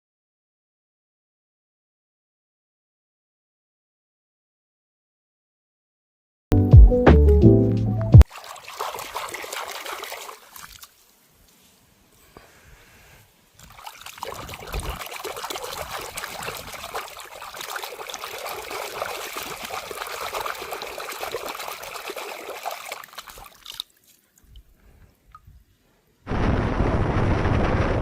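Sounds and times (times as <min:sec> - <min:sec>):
water running and splashing: 0:08.2 - 0:11.2, 0:13.6 - 0:25.5.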